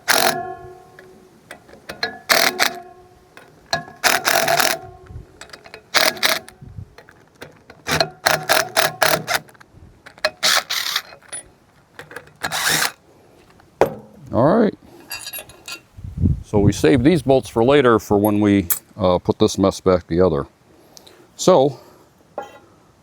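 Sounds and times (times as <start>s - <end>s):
metallic ringing: 0.0s - 7.1s
ratchet wrench clicking: 0.0s - 13.0s.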